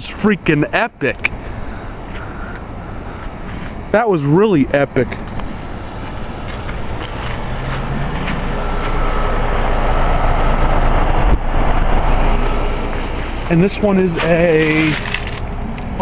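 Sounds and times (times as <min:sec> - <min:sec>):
heat pump humming: 0:05.1 - 0:16.0.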